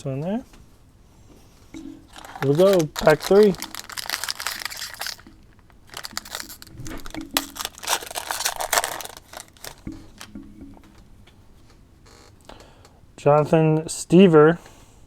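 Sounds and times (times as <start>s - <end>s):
cards rustling and clicking: 2.1s - 5.3s, 5.9s - 10.3s
wrapper tearing and crinkling: 2.1s - 10.3s.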